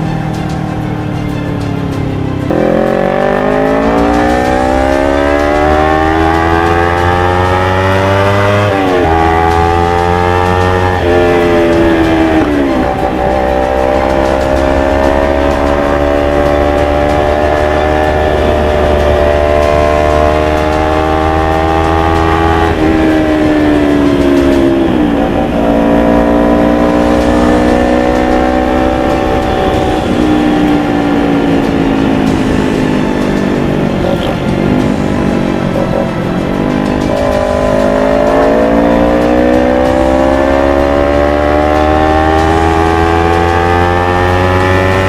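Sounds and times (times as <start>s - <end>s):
motorcycle engine revving: 0.0s - 45.0s.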